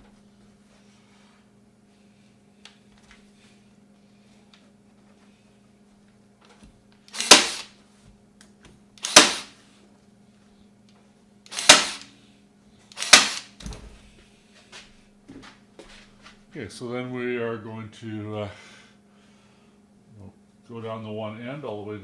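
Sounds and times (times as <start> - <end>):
staple gun firing: 7.1 - 7.7, 9.0 - 9.5, 11.5 - 12.1, 13.0 - 13.5.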